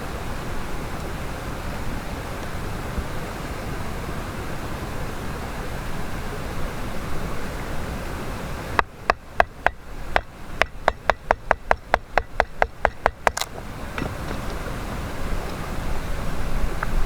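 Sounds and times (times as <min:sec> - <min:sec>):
stream rushing: 0:00.0 - 0:17.0
sharp dry knocks on wood: 0:08.8 - 0:14.5.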